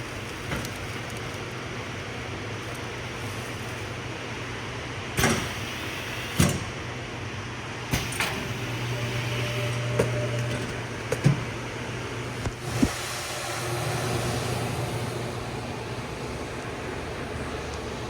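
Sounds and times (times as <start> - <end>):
shrink-wrapping machine humming: 7.9 - 18.0.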